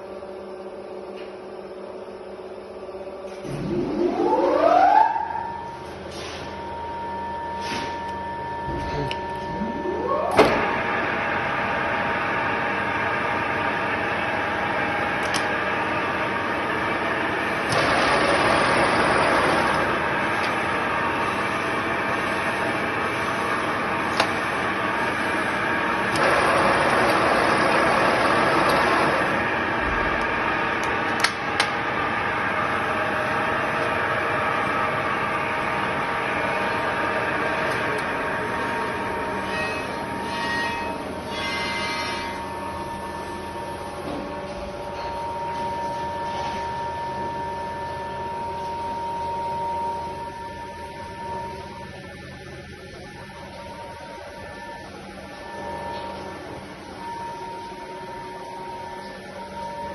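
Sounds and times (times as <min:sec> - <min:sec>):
lathe motor humming: 0:10.6 - 0:31.2.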